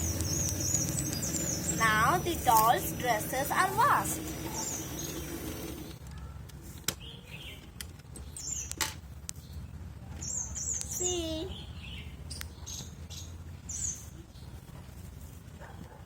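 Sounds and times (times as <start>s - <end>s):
birds chirping: 0.0s - 6.0s, 7.0s - 14.6s
small electric motor humming: 0.0s - 6.0s.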